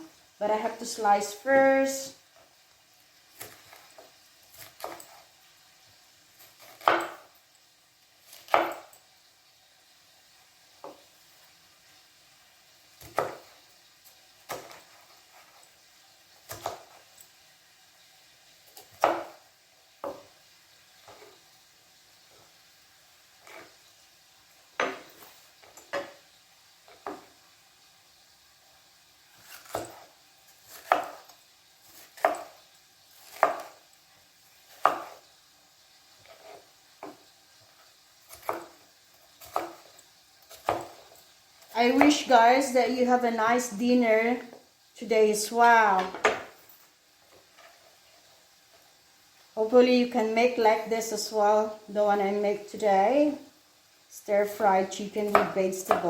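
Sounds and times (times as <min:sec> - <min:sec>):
knife chopping on cutting board: 0:04.5 - 0:05.2, 0:06.4 - 0:07.3, 0:08.3 - 0:08.9, 0:13.0 - 0:13.6, 0:14.5 - 0:15.6, 0:16.5 - 0:17.0, 0:18.8 - 0:19.4, 0:29.4 - 0:31.3, 0:31.9 - 0:32.6, 0:33.2 - 0:33.8, 0:34.7 - 0:35.2, 0:38.3 - 0:38.8, 0:39.4 - 0:39.9, 0:40.5 - 0:41.1, 0:55.3 - 0:56.0.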